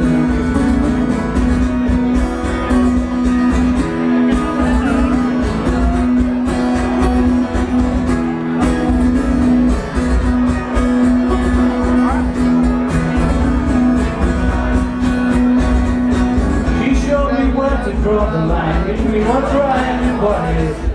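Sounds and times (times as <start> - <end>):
live band playing: 0.0 - 20.9
strummed guitar: 0.0 - 20.9.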